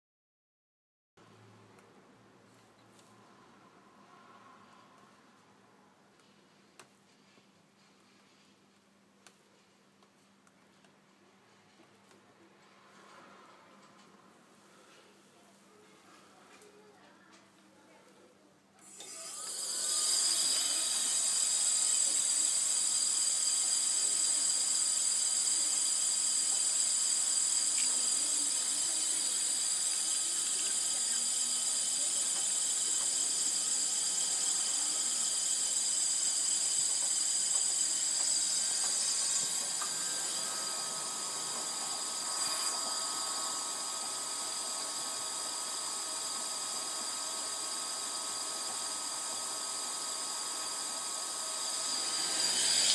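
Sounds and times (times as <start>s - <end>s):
machine motor whining: 18.8s - 52.9s.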